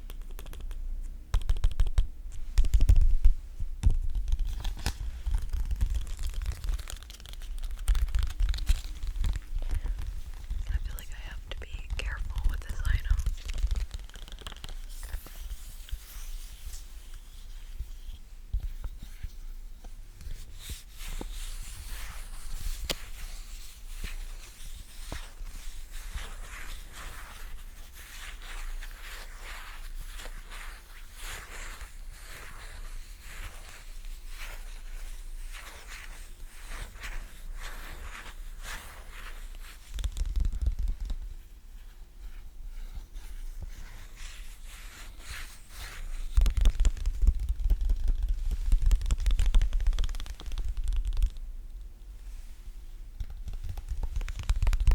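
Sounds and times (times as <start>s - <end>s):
tapping and peeling sticky surface: 46.2s - 51.4s, 53.2s - 54.9s.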